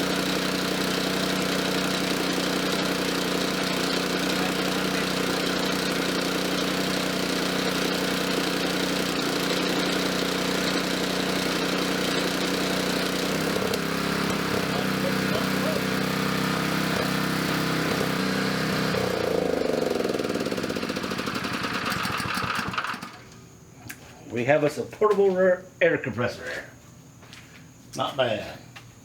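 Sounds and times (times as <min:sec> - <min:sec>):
small gasoline engine running: 0:00.0 - 0:23.4.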